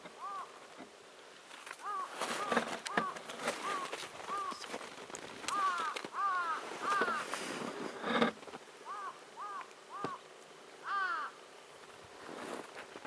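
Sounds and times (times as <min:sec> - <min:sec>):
crows cawing: 0:00.0 - 0:00.7, 0:01.7 - 0:07.4, 0:08.8 - 0:11.4.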